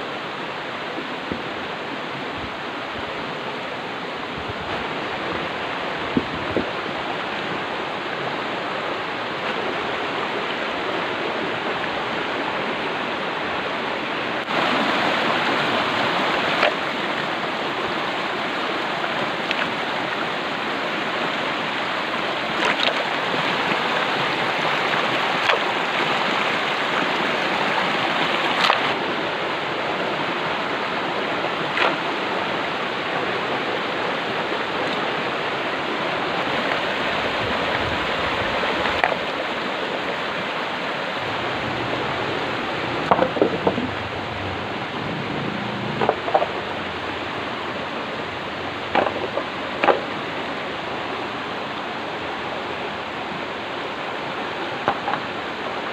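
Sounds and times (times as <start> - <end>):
stream water flowing: 0.0 - 55.9.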